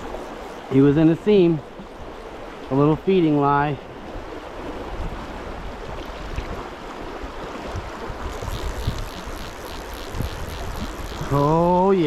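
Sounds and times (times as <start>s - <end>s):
wind buffeting microphone: 7.6s - 12.0s
faint rapid ticking: 8.3s - 11.8s.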